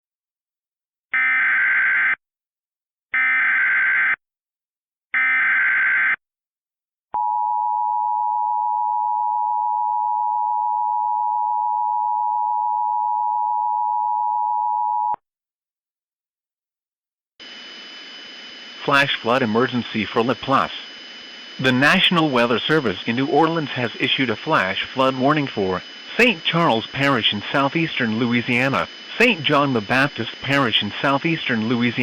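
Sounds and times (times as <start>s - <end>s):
digital data bursts: 17.4s - 32.0s.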